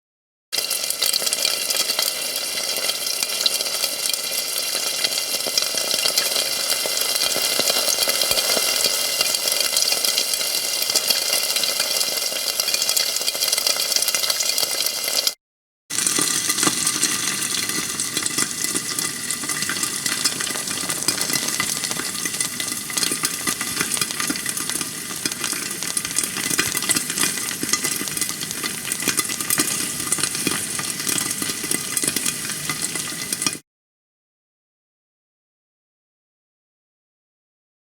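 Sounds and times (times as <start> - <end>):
steak sizzling in a frying pan: 0.6 - 33.6.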